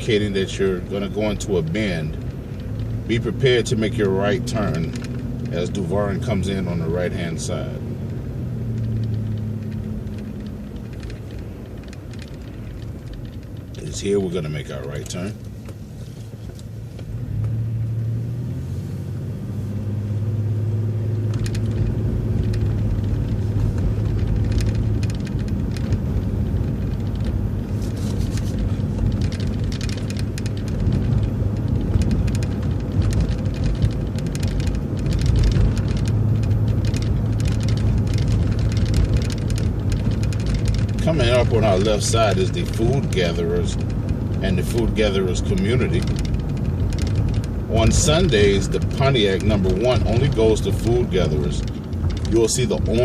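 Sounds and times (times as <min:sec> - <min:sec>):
bus body rattling and clicking: 0:00.0 - 0:53.0
bus engine hum: 0:00.0 - 0:53.0.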